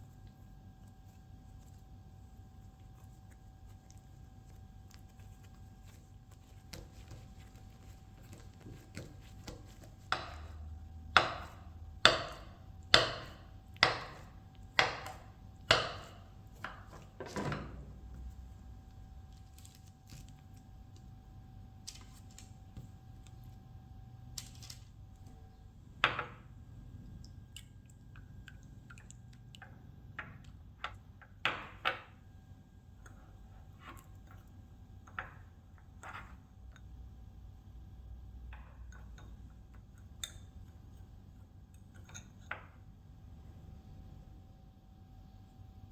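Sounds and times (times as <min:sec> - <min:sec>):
knife chopping on cutting board: 0:08.3 - 0:17.7.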